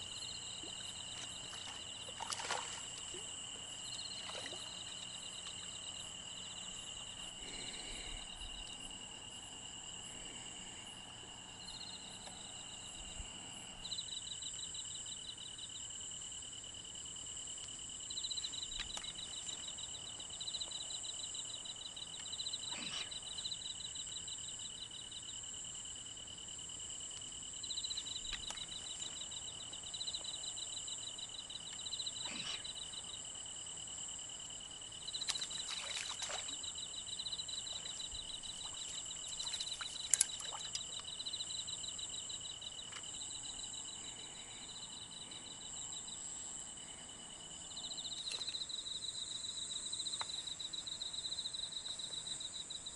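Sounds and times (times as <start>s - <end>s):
insect pulsed chirping: 0.0s - 52.9s
insects trilling: 0.0s - 52.9s
faint ticks: 38.6s - 41.4s, 50.0s - 50.5s.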